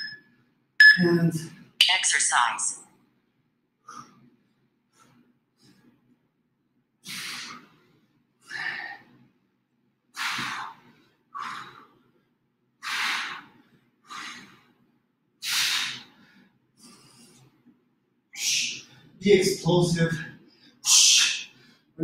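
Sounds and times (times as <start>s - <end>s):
person breathing heavily: 7.0s - 7.8s, 8.4s - 9.1s, 10.2s - 12.0s, 12.8s - 14.8s, 15.4s - 17.4s.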